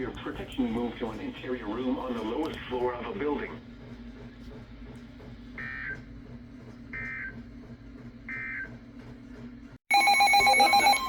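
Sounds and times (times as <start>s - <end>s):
warbling digital data tones: 9.9s - 11.0s.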